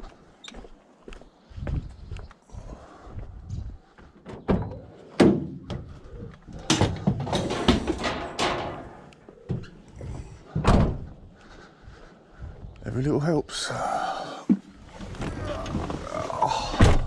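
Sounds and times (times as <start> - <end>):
scrap metal clattering: 6.6 - 9.2.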